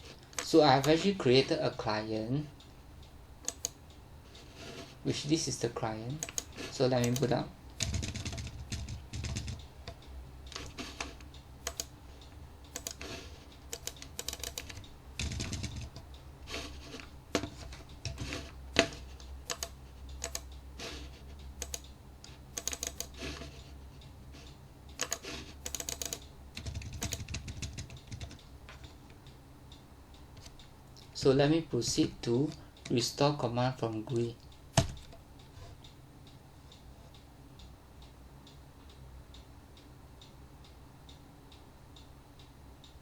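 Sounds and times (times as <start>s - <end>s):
low steady hum: 0.0s - 43.0s
keyboard typing clicks: 3.4s - 3.8s, 6.1s - 11.9s, 12.7s - 23.6s, 24.9s - 29.0s.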